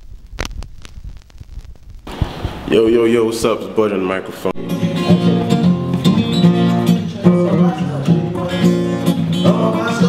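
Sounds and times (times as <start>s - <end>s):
acoustic guitar strumming: 4.4s - 10.0s.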